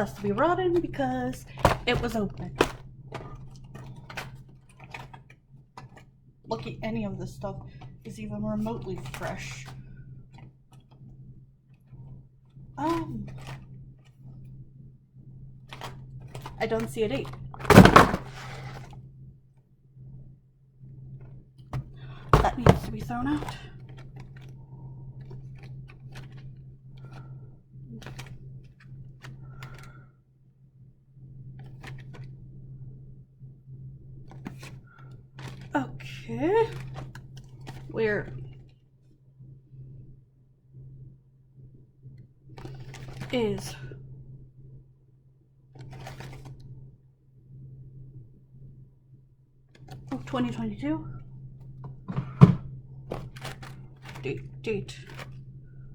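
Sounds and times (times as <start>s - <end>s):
food containers clicking and knocking: 1.4s - 6.0s, 15.7s - 18.9s, 21.8s - 23.6s, 51.8s - 54.3s
food packaging rustling: 17.6s - 18.9s, 51.8s - 54.3s, 55.0s - 55.4s.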